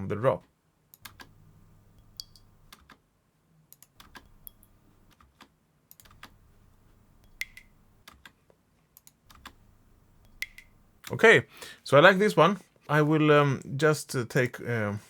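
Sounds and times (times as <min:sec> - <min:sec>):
keyboard and mouse clicking: 0:00.9 - 0:03.0, 0:03.7 - 0:06.4, 0:07.2 - 0:08.4, 0:09.0 - 0:11.2.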